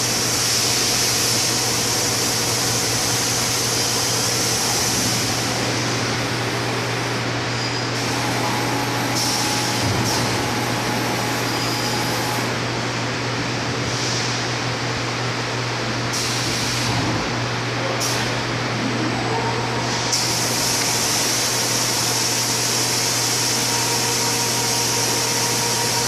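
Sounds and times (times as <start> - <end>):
cutting machine humming: 19.4 - 26.0.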